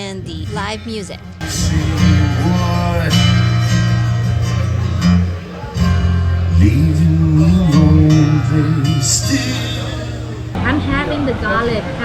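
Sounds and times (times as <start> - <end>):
guitar: 0.0 - 12.0
person singing: 5.6 - 10.5.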